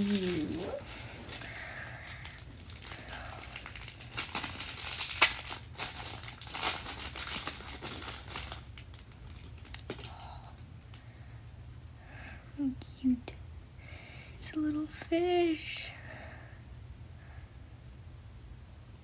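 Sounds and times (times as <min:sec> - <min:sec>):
plastic wrapping crinkling: 0:00.0 - 0:10.3.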